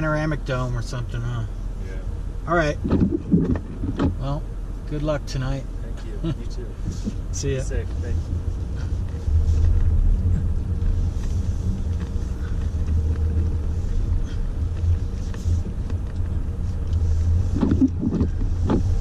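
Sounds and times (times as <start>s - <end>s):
car engine and tyres rumbling: 0.0s - 19.0s.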